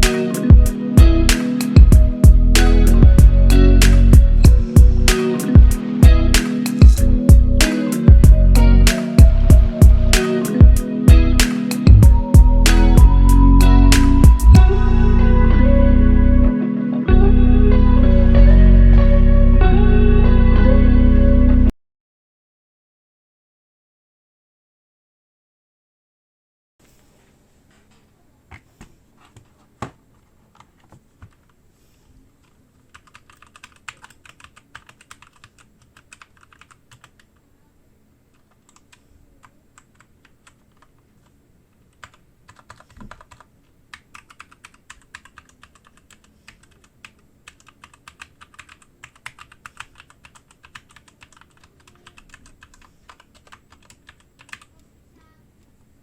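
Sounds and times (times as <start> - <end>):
mechanical keyboard typing: 32.4 - 37.3, 38.3 - 41.0, 41.9 - 54.8.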